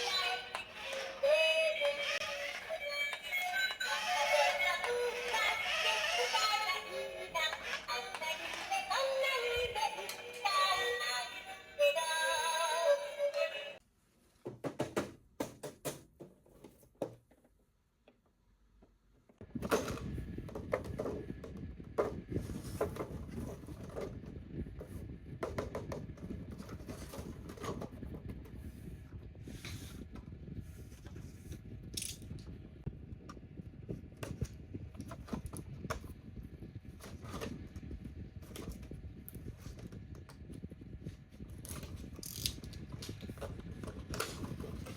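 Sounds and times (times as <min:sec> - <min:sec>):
low steady rumble: 0:19.4 - 0:44.9
plastic toy parts clicking: 0:42.2 - 0:42.7.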